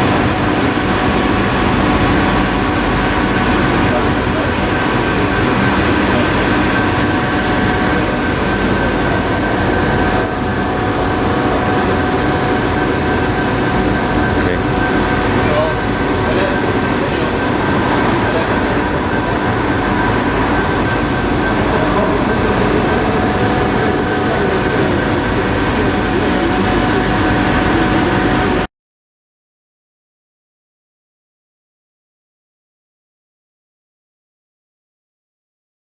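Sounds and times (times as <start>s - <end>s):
faint steady whine: 0.0s - 28.7s
industrial machinery humming: 0.0s - 28.7s.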